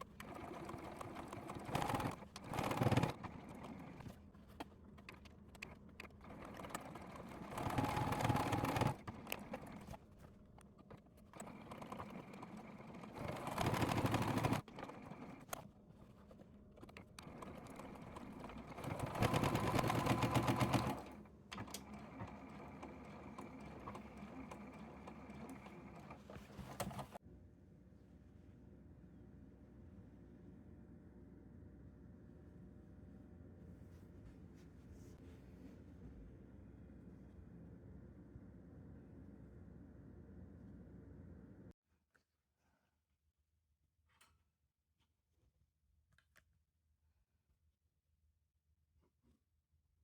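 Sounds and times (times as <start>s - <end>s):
electric sewing machine stitching: 0.0s - 4.1s, 6.1s - 10.0s, 11.3s - 15.6s, 17.2s - 27.2s.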